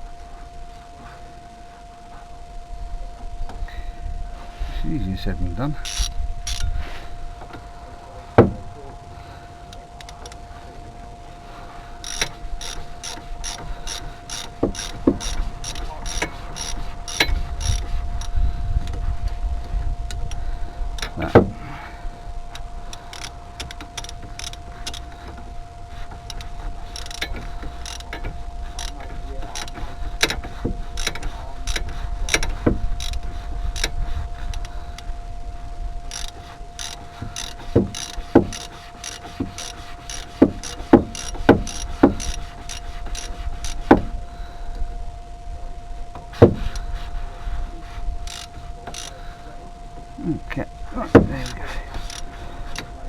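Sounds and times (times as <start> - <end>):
sharp metal knocks: 5.6 - 9.0, 12.0 - 18.4, 20.1 - 21.9, 22.6 - 34.8, 36.1 - 44.2, 46.1 - 47.0, 51.0 - 53.0
socket ratchet clicking: 22.5 - 35.1.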